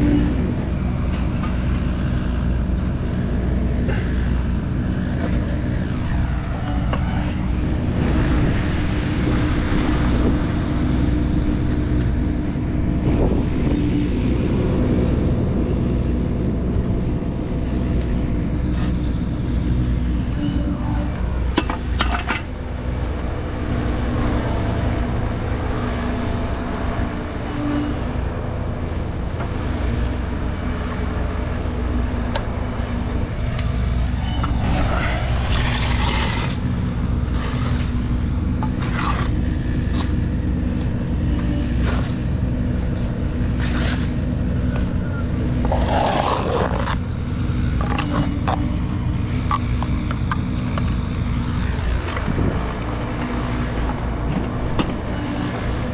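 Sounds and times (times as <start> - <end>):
engine running: 0.0 - 55.9
short scraping noises: 34.2 - 40.2, 41.3 - 42.3, 42.9 - 44.2.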